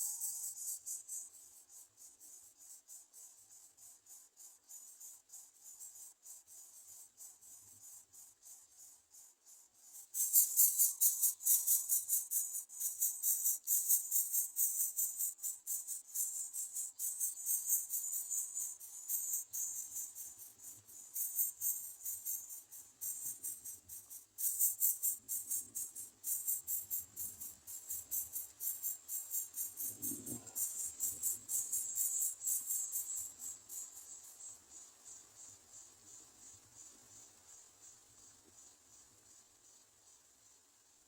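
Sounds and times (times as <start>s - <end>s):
insects trilling: 0.0s - 40.6s.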